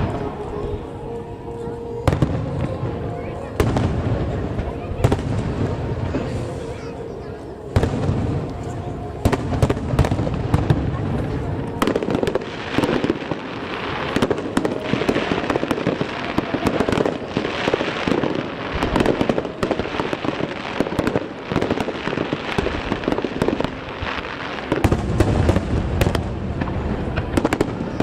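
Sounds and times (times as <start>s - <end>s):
heavy low fireworks booms: 0.0s - 28.0s
fireworks pops and crackles: 7.8s - 28.0s.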